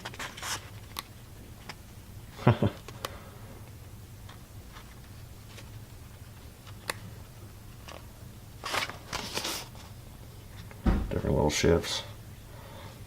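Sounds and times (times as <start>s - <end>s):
page turning rustle: 0.0s - 1.8s, 7.8s - 10.0s.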